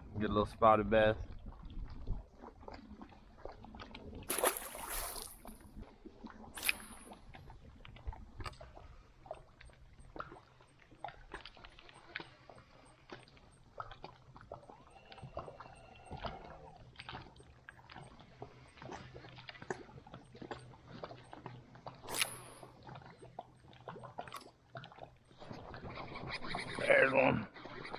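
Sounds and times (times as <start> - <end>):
water lapping against kayak hull: 1.5 - 22.0.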